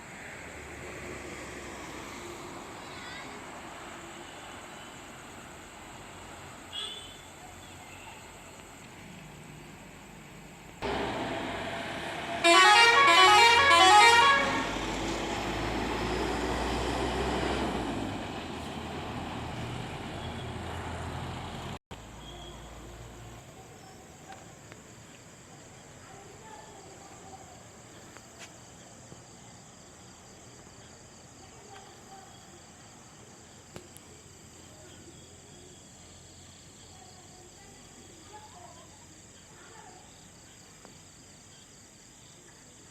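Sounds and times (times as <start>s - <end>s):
bus engine and road noise: 0.0s - 26.2s
multi-tone bus horn: 6.7s - 7.2s, 10.8s - 15.1s.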